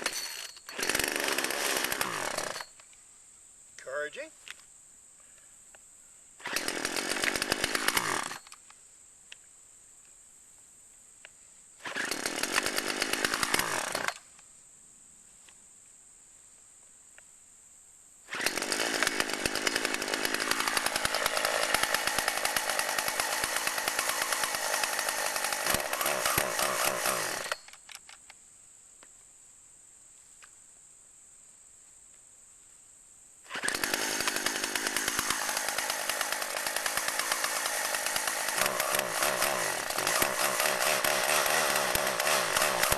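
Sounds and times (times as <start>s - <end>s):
chainsaw running: 0.0s - 2.8s, 6.4s - 8.6s, 11.8s - 14.3s, 18.3s - 27.7s, 33.5s - 42.9s.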